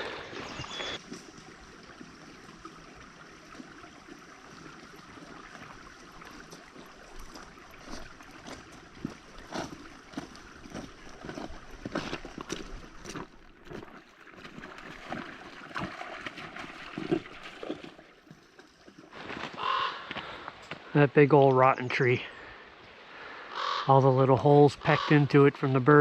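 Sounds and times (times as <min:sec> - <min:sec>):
footsteps on path: 0:06.2 - 0:18.0, 0:19.1 - 0:20.9.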